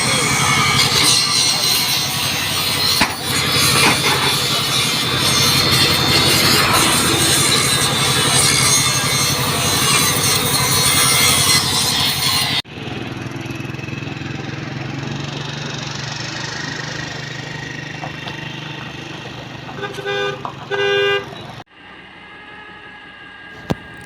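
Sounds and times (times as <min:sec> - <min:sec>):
harsh scraping: 0:23.5 - 0:24.0.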